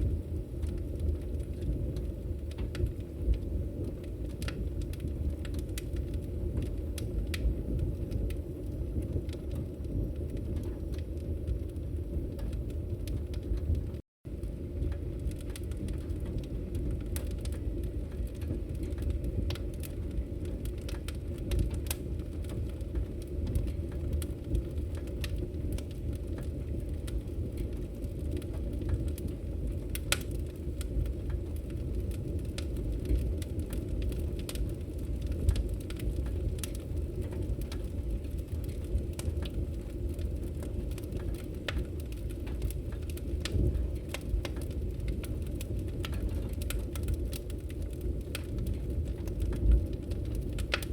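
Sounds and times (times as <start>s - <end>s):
fire crackling and popping: 0.0s - 50.9s
fire flames rumbling: 0.0s - 50.9s.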